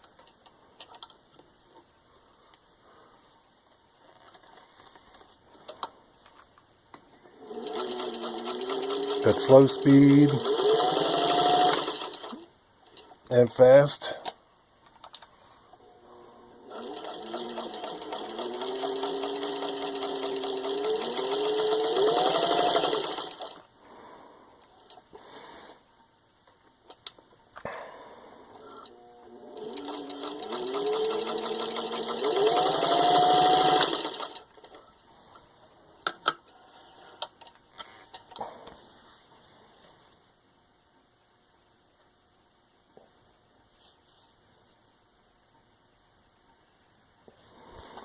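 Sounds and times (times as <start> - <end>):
sewing machine stitching with whine: 7.3 - 12.5, 15.8 - 23.7, 28.5 - 34.8.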